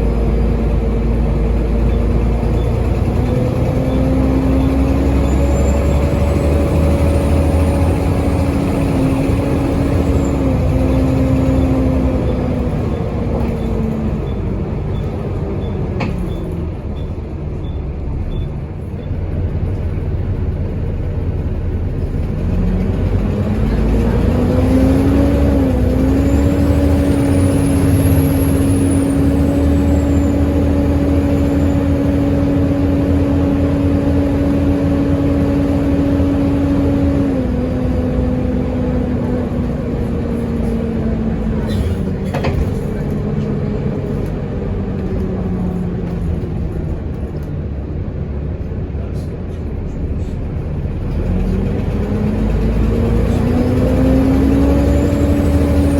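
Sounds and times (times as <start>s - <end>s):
bus engine whining drone: 0.0s - 55.9s.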